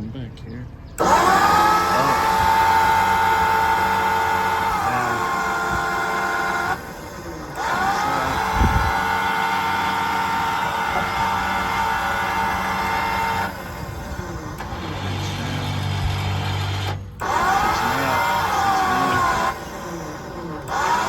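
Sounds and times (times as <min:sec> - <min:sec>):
crane motor whining: 0:00.7 - 0:21.0.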